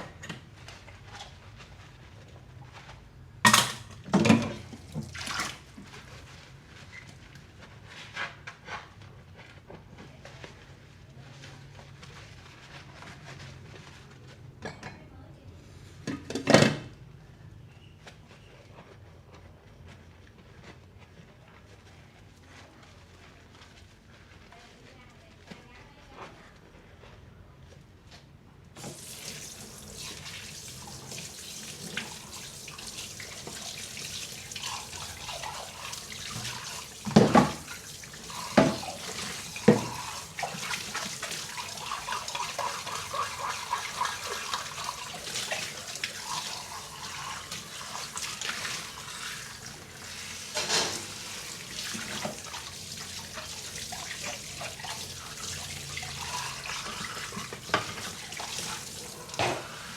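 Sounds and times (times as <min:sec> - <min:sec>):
dish washing rustle and splash: 0:00.4 - 0:14.5, 0:28.8 - 0:59.9
tap water running into sink: 0:03.5 - 0:06.0, 0:28.8 - 0:59.9.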